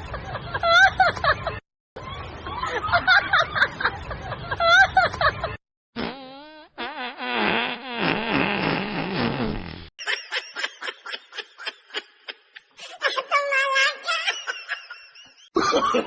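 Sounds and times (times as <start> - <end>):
fart sound effect: 6.0 - 9.9.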